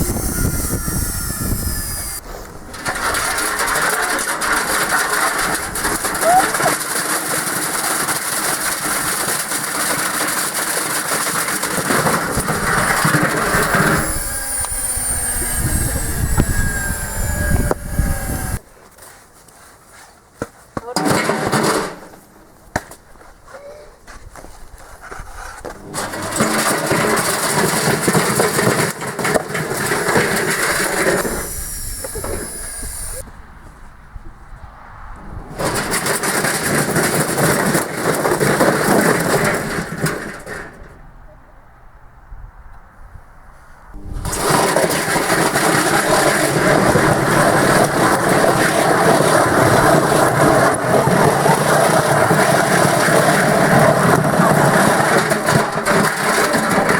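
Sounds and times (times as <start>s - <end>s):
washing machine running: 25.8s - 28.4s, 44.0s - 56.9s.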